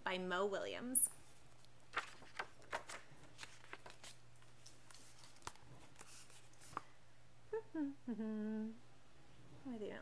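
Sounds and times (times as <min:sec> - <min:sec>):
faint low hum: 0:00.0 - 0:10.0
book pages turning: 0:01.3 - 0:06.9
paper clicks and rustles: 0:01.5 - 0:06.9.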